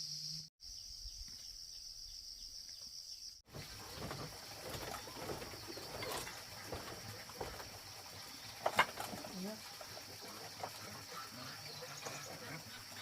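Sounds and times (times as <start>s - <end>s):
insects droning: 0.0s - 13.0s
crackly rustling and clicking: 3.5s - 12.4s.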